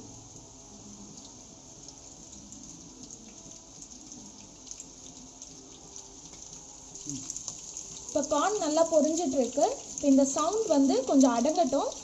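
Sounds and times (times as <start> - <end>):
corn deep-frying in oil: 0.0 - 12.0.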